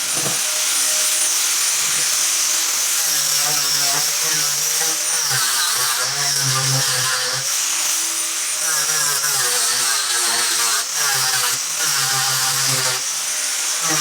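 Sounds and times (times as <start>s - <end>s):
electric sander on wood: 0.0s - 14.0s.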